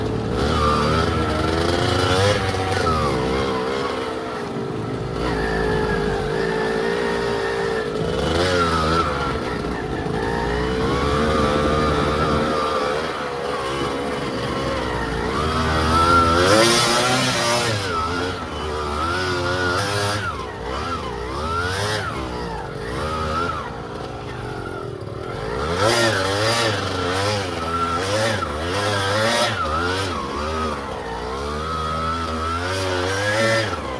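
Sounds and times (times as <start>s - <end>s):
motorcycle engine revving: 0.0s - 33.9s.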